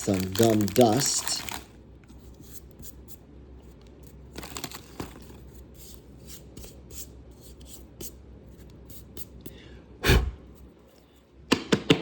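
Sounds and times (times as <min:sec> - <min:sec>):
trading cards being shuffled: 0:00.0 - 0:01.7.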